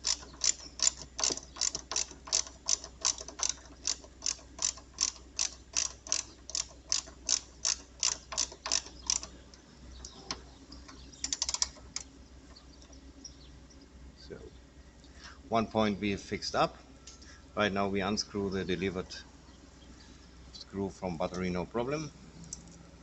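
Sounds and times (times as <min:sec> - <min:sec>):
ratchet wrench clicking: 0:00.0 - 0:09.4, 0:11.2 - 0:12.1.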